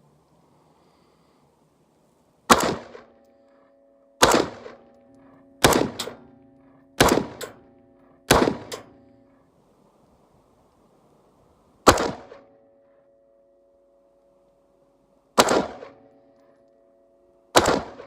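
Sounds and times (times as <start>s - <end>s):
single gunshots: 2.5s - 3.1s, 4.2s - 4.8s, 5.6s - 6.2s, 7.0s - 7.6s, 8.3s - 8.9s, 11.9s - 12.4s, 15.4s - 16.0s, 17.6s - 18.0s
gunshot echo crack: 2.5s - 3.2s, 4.2s - 6.3s, 7.0s - 7.7s, 8.3s - 9.0s, 11.8s - 12.5s, 15.4s - 16.0s, 17.6s - 18.0s.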